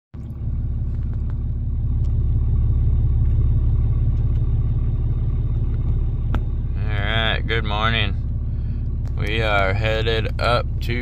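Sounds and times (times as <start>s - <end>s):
vehicle engine rumbling: 0.2s - 11.0s.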